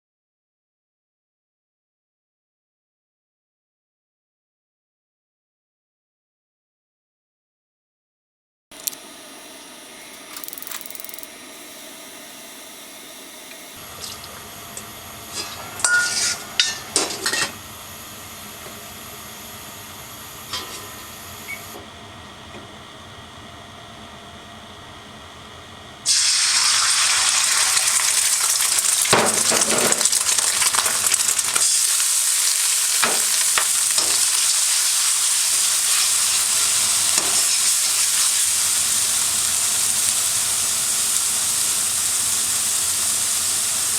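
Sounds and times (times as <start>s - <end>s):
food sizzling in hot oil: 13.7s - 21.8s, 26.0s - 43.9s
cookware clinking: 14.0s - 17.6s
utensil clinking against wok: 14.0s - 17.6s.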